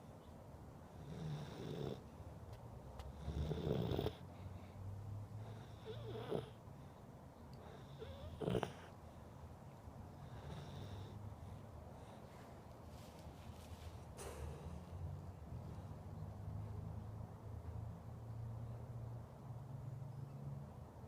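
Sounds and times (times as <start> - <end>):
pet snoring: 0.9 - 2.1, 3.1 - 4.3, 5.4 - 6.6, 7.6 - 8.9, 10.2 - 11.2.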